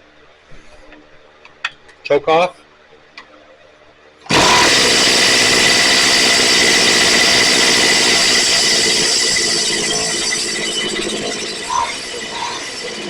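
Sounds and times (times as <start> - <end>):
string trimmer engine running: 4.3 - 13.0.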